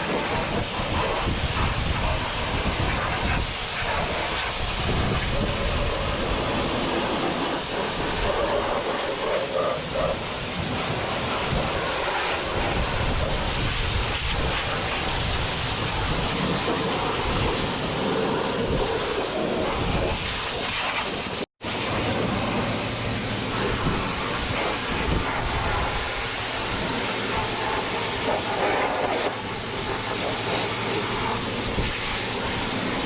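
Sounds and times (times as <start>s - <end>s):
washer pump running: 21.7s - 33.0s
pressure washer jet hissing: 22.1s - 33.0s.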